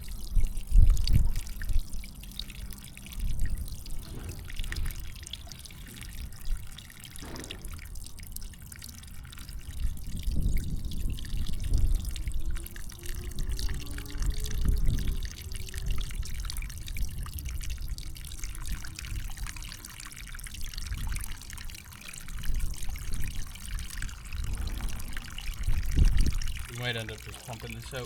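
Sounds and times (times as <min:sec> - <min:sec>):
water dripping and trickling: 0:00.0 - 0:28.0
low rumble: 0:23.5 - 0:26.7.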